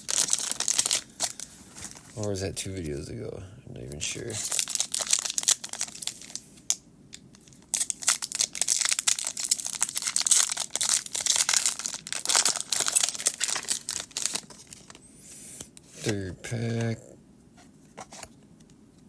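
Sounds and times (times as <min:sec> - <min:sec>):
foil wrapper crinkling: 0:00.0 - 0:02.3, 0:04.1 - 0:15.0.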